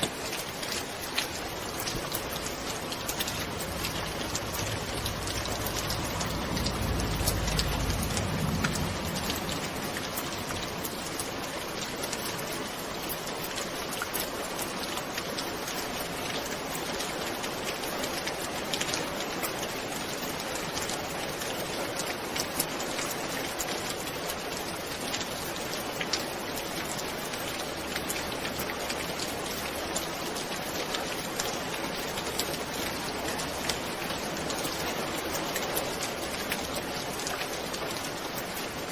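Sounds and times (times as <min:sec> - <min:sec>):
rain hiss: 0:00.0 - 0:38.9
sharp raindrop impacts: 0:00.0 - 0:38.9
low rumble: 0:02.6 - 0:11.2.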